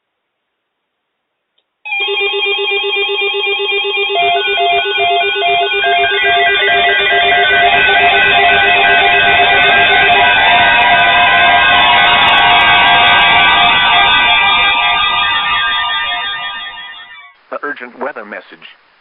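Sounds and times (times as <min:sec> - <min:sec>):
electronic alert beeps and warbling tones: 0:04.1 - 0:17.3.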